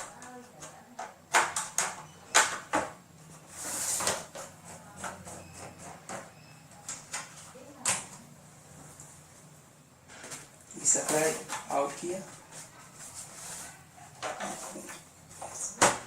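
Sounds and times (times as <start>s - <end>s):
scraping rustle: 11.0s - 15.6s.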